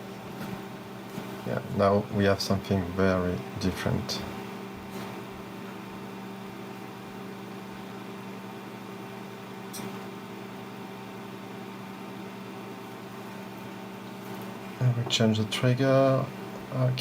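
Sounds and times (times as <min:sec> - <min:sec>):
computer fan humming: 0:00.0 - 0:17.0.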